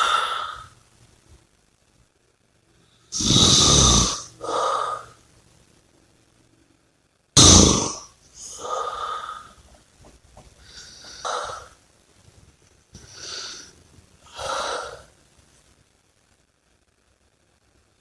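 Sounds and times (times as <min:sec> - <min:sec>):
person snoring: 0:00.0 - 0:00.7, 0:03.1 - 0:05.2, 0:07.4 - 0:09.6, 0:10.7 - 0:11.8, 0:13.0 - 0:13.7, 0:14.3 - 0:15.1
loud snort: 0:03.1 - 0:05.1, 0:07.4 - 0:09.5.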